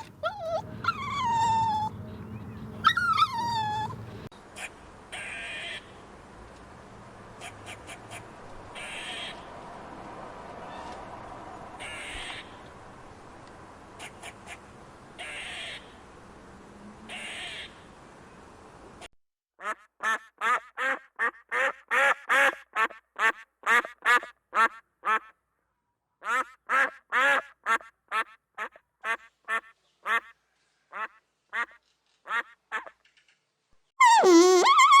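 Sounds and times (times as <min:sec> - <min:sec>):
short calls: 0:00.0 - 0:04.3, 0:34.0 - 0:35.0
duck quacking: 0:19.6 - 0:25.3, 0:26.2 - 0:30.3, 0:31.0 - 0:32.9.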